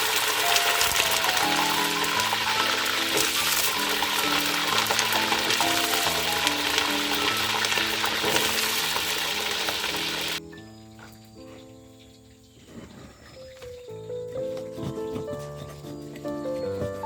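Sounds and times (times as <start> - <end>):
food sizzling in hot oil: 0.0 - 10.4
background music: 0.0 - 13.1, 13.8 - 17.0.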